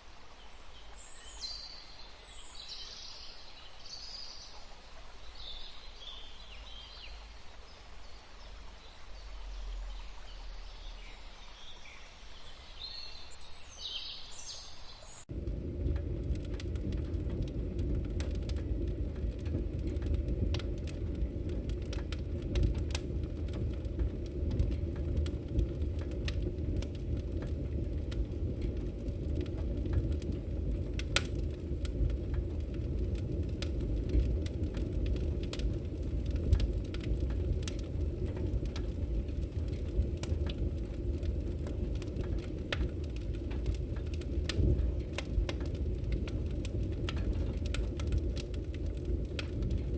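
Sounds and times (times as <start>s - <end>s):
fire crackling and popping: 15.2s - 49.9s
fire roaring: 15.3s - 49.9s.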